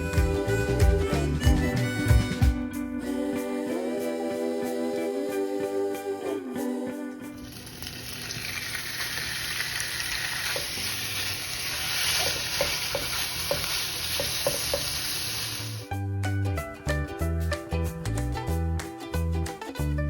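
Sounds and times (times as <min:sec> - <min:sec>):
food sizzling in hot oil: 0:07.4 - 0:15.9
stirring taps in pan: 0:10.4 - 0:15.3.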